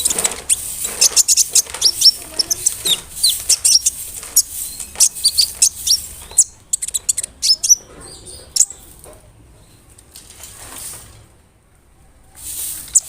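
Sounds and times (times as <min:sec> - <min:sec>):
bird singing high chirps: 0:00.0 - 0:08.9.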